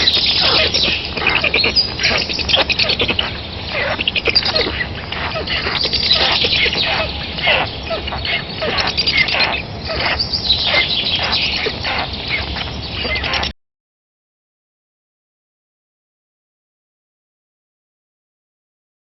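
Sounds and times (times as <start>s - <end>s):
birds chirping: 0.0s - 13.6s.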